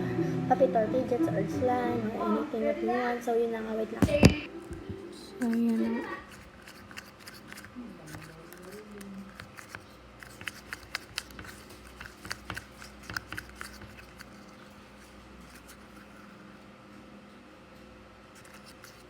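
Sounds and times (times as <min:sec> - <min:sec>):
small clicks and taps of handling: 0:05.4 - 0:14.6.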